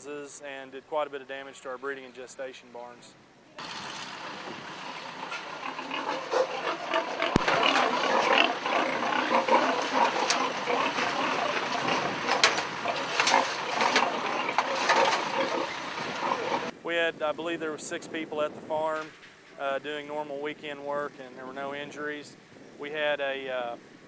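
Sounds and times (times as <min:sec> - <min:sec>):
pigs squealing and grunting: 0:04.9 - 0:16.7.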